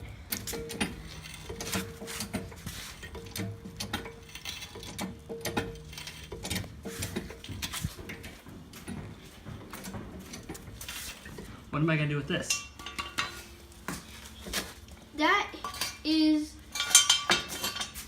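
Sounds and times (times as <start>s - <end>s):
trolley jack clicks and clanks: 0.3s - 11.5s.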